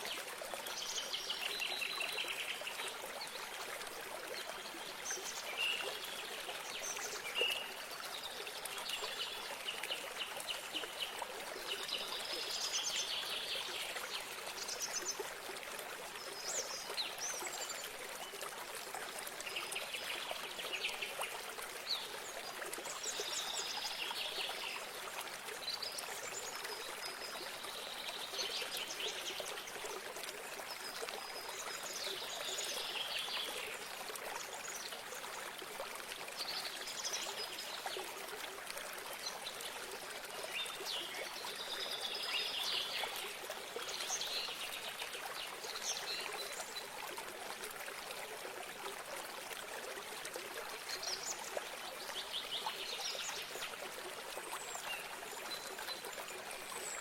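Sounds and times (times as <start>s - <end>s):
water trickling: 0.0s - 57.0s.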